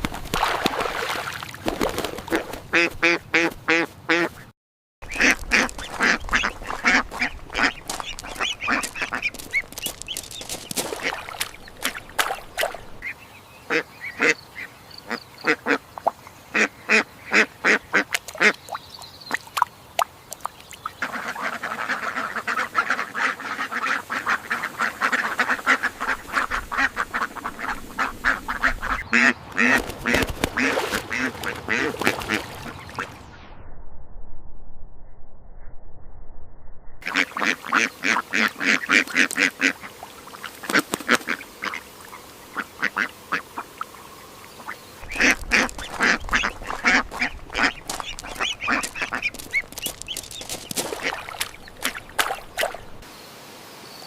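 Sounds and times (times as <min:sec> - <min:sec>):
ducks quacking: 0:02.2 - 0:15.9, 0:16.5 - 0:18.7, 0:20.9 - 0:33.2, 0:37.0 - 0:53.1.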